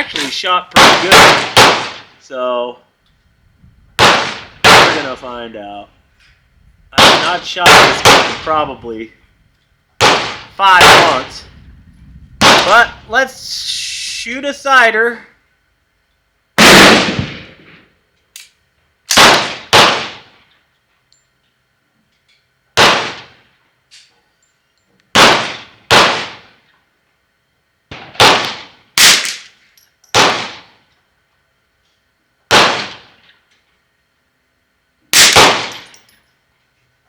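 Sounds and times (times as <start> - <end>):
rifle shots cracking: 0.1 - 2.2, 4.0 - 5.3, 7.0 - 8.8, 10.0 - 11.4, 12.4 - 13.0, 16.6 - 17.9, 19.1 - 20.4, 22.8 - 23.4, 25.1 - 26.6, 27.9 - 30.8, 32.5 - 33.2, 35.1 - 35.9.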